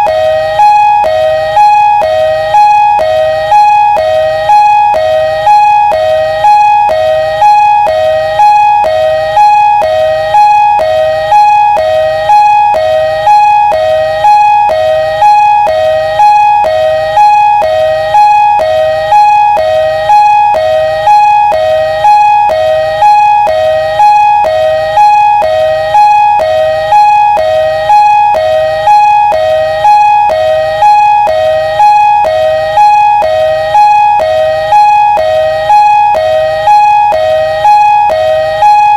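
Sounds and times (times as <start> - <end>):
ambulance siren two-tone: 0.0 - 38.9.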